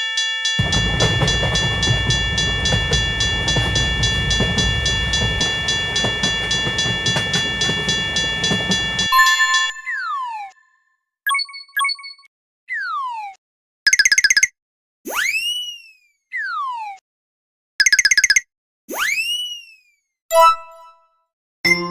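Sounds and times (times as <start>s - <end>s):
level-crossing warning bell: 0.0s - 10.1s
train passing: 0.6s - 9.2s.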